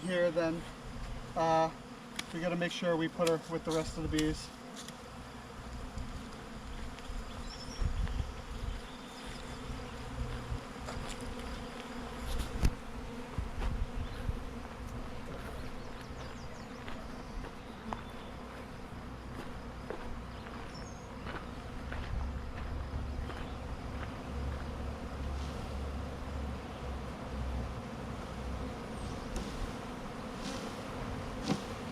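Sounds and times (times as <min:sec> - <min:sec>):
bees buzzing: 0:00.0 - 0:31.9.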